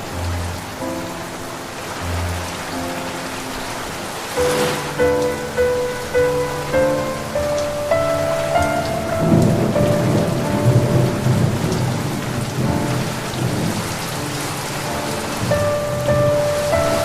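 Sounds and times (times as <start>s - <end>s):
steady rain falling: 0.0s - 17.0s
thunder rumbling: 4.2s - 17.0s.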